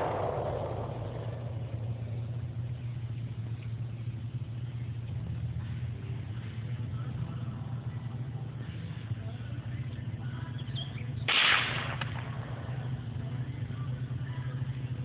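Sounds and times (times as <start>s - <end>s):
rifle shot: 0.0s - 2.6s, 11.3s - 13.0s
low rumble: 0.0s - 15.0s.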